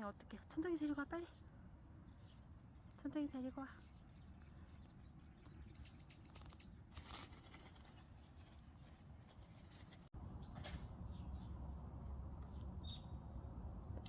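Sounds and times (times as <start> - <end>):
small bird chirping: 0.6 - 6.8, 12.4 - 13.4.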